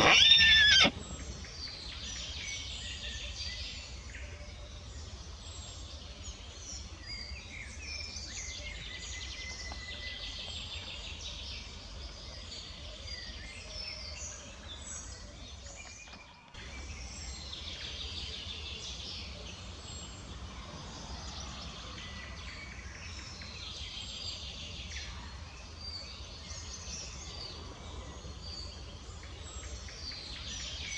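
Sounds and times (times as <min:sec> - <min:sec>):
birds chirping and singing: 0:00.0 - 0:01.4.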